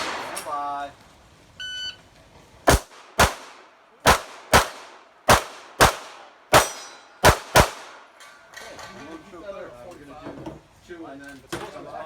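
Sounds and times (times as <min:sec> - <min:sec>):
pistol shots with echo: 0:02.7 - 0:08.1.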